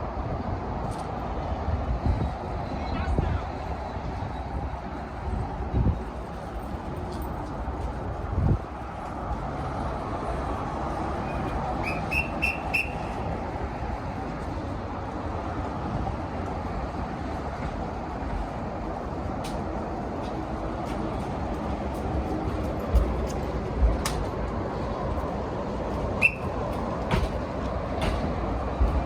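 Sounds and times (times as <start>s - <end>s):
train rumbling: 0.0s - 29.0s
high-pitched whistle peeps: 11.8s - 13.2s, 26.2s - 26.6s.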